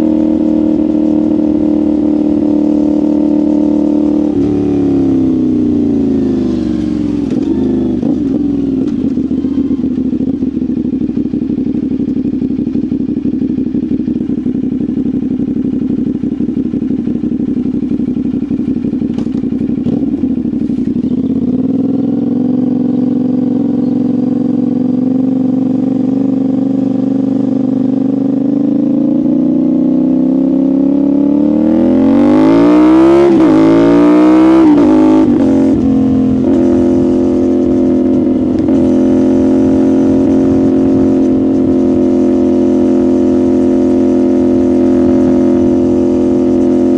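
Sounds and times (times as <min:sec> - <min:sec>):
motorcycle engine and exhaust: 0:00.0 - 0:46.9
quick gear change: 0:19.1 - 0:21.3.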